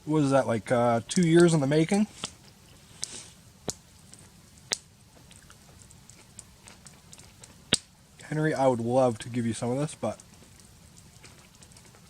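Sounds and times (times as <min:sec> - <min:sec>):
soft chewing: 0:02.1 - 0:07.9, 0:10.1 - 0:12.0.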